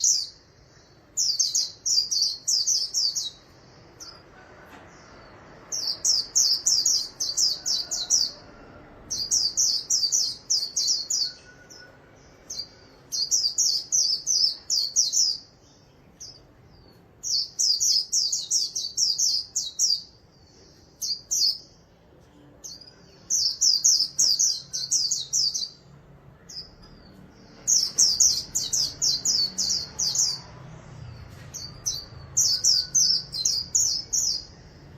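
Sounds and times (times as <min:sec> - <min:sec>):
bird twittering song: 0:09.1 - 0:22.0, 0:22.6 - 0:34.9.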